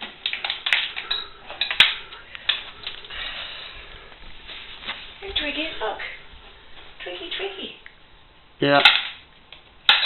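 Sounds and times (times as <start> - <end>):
treats rattling in plastic bottles: 0.0 - 3.2.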